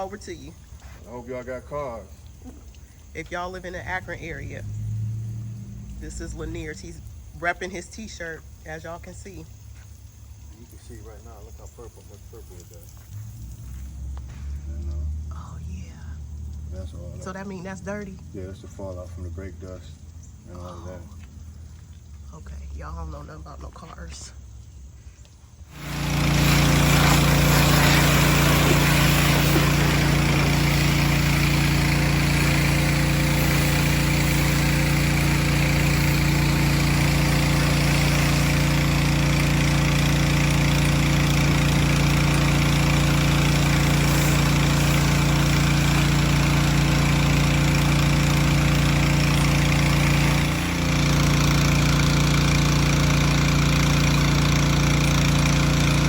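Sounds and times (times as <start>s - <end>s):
machine motor humming and hissing: 25.7s - 56.0s.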